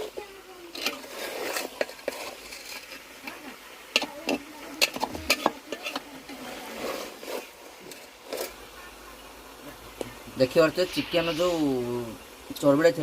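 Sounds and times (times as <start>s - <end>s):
chicken sizzling in oil: 0.0s - 13.0s
metal ladle scraping a pan: 0.7s - 3.3s, 3.9s - 8.6s.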